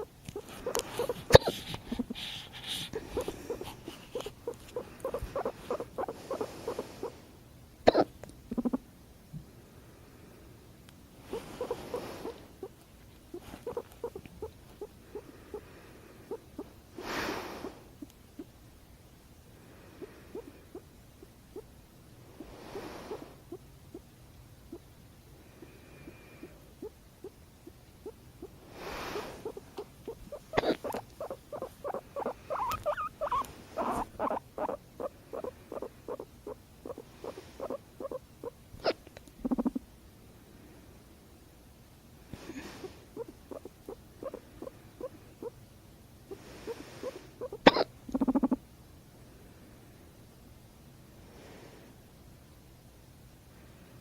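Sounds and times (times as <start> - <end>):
guinea pig purring: 0.0 - 7.3, 7.9 - 8.8, 11.2 - 18.6, 19.8 - 21.7, 22.3 - 24.1, 25.5 - 39.9, 42.4 - 45.6, 46.3 - 48.6
person hiccuping: 7.9 - 8.1.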